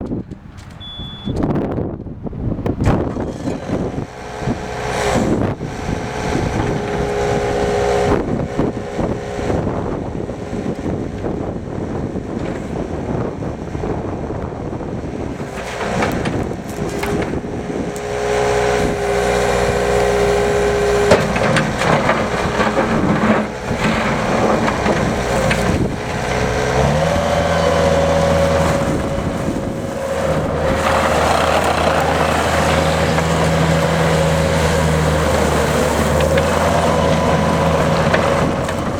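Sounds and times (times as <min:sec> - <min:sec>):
diesel engine running: 0:03.3 - 0:38.9.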